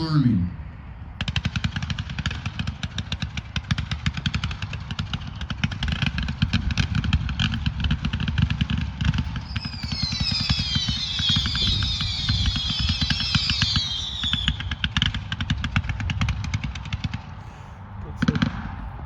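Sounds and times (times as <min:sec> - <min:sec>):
firework popping rapidly: 0:01.2 - 0:17.4
firework whistles falling in pitch: 0:09.2 - 0:15.0.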